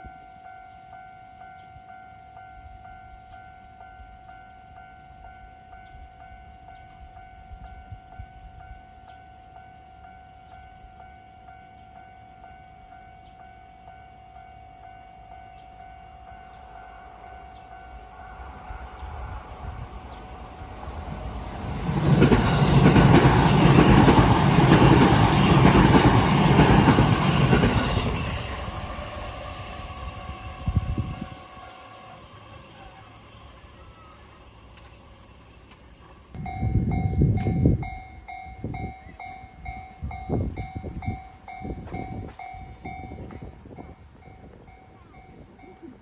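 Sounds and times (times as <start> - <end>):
electric train passing: 0.0 - 46.0
level crossing alarm ringing: 36.4 - 43.4.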